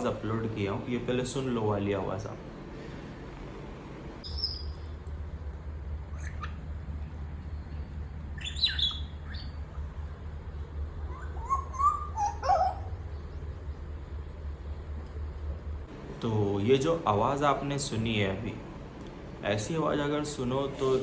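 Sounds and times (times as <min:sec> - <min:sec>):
steady low hum: 0:00.0 - 0:21.0
parrot whistling: 0:04.2 - 0:04.9, 0:06.1 - 0:06.6, 0:08.4 - 0:09.7, 0:11.0 - 0:13.1
parrot chirping: 0:04.2 - 0:05.0, 0:06.0 - 0:09.9, 0:10.8 - 0:14.0.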